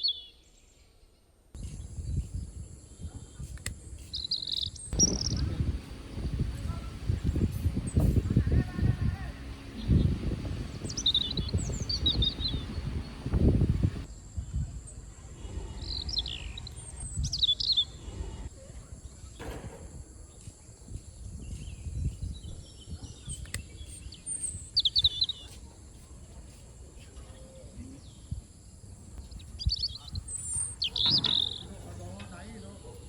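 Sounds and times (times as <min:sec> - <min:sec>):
small birds chirping: 0:00.0 - 0:14.1, 0:20.1 - 0:33.0
uneven low rumble: 0:05.0 - 0:14.1.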